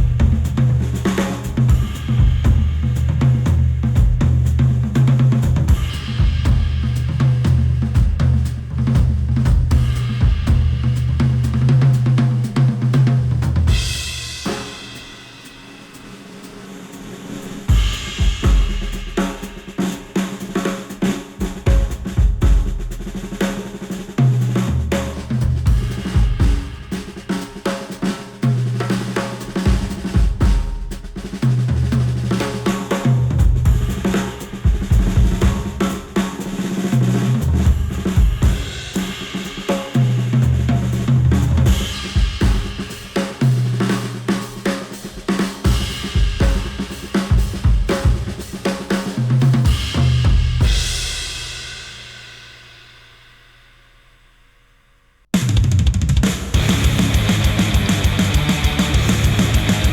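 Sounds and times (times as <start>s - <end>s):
drum kit: 0.0s - 54.6s, 55.3s - 59.9s
deep bass line: 56.6s - 59.9s.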